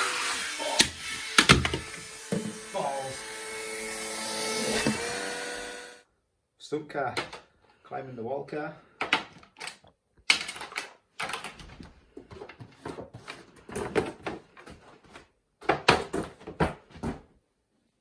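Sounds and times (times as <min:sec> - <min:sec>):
objects being handled: 0:00.3 - 0:03.1.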